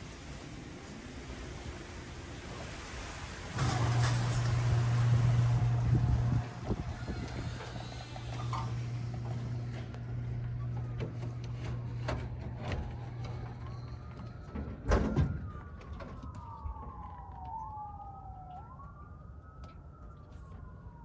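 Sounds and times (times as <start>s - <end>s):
siren wailing: 3.6s - 21.0s.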